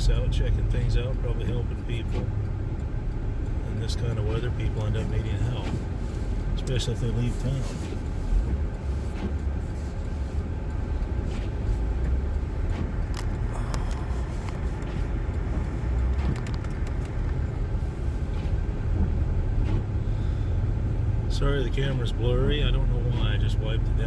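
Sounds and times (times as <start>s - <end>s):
low rumble of engine and tyres: 0.0s - 24.0s.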